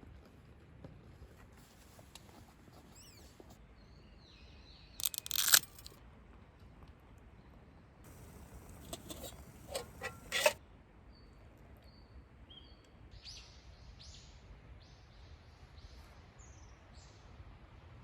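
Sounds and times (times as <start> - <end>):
sharp crackles and snaps: 5.0 - 6.0
faint outdoor background noise: 8.1 - 10.6.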